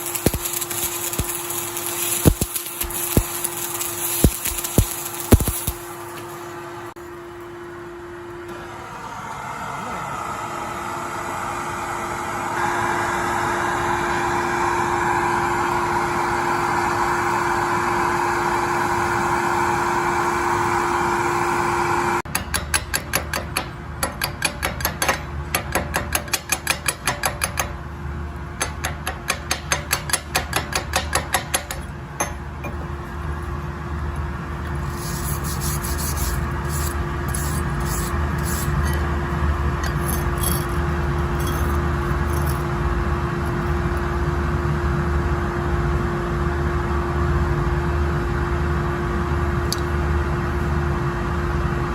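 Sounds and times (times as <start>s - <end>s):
arc welding hiss: 0.0s - 6.6s, 34.8s - 38.9s
welding crackling pulses: 0.0s - 6.6s, 34.8s - 38.9s
constant hum: 0.0s - 51.9s.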